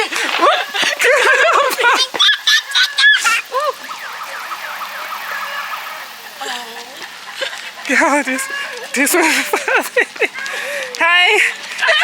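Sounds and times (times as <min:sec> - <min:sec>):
high-pitched wavering cries: 0:00.0 - 0:07.4.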